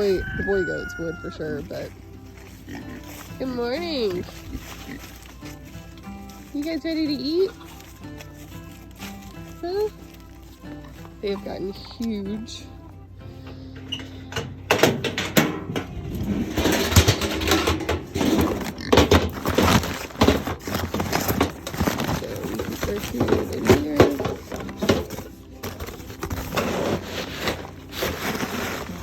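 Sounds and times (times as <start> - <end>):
scoop clattering on feed pans: 13.4 - 29.0.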